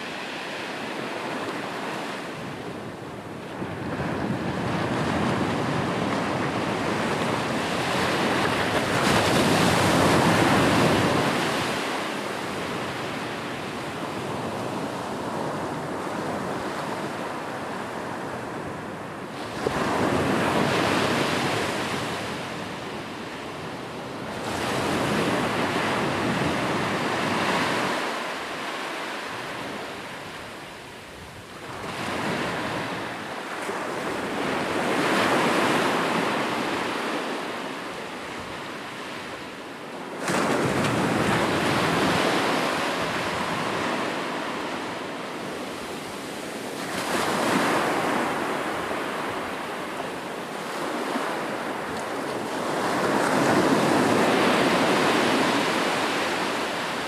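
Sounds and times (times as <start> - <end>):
ocean waves breaking: 40.1 - 57.0.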